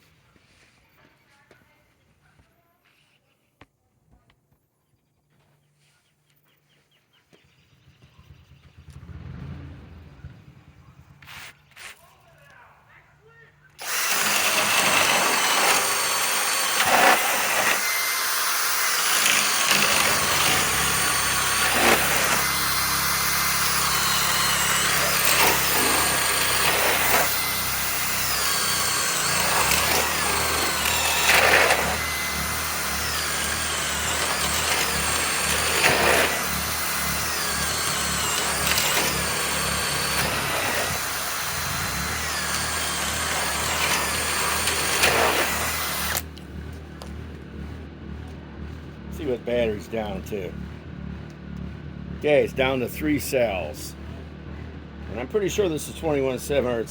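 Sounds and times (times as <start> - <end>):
cordless drill boring into wood: 13.8 - 47.2, 55.1 - 56.9.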